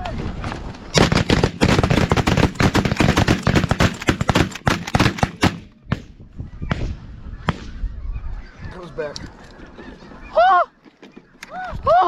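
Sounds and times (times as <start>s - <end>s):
shotgun fire: 1.0s - 7.8s.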